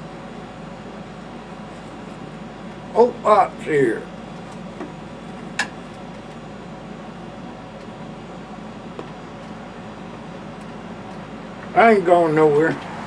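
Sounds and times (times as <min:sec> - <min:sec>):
low background hum: 0:00.0 - 0:13.0.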